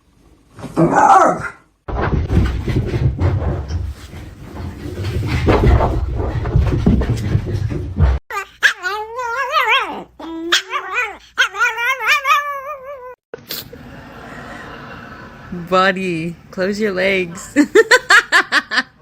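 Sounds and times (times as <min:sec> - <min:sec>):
dog howling whines: 0:08.8 - 0:13.2.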